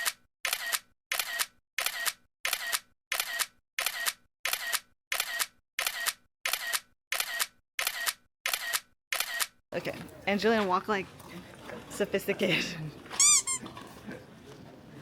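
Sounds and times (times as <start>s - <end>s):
camera shutter clicks: 0.0s - 9.5s.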